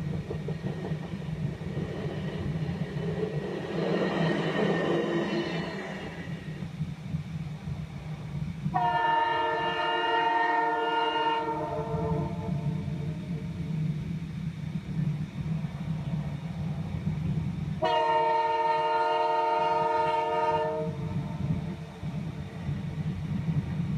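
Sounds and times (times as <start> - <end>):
train rumbling: 0.0 - 23.9
train horn chord: 8.7 - 12.7, 17.8 - 21.1.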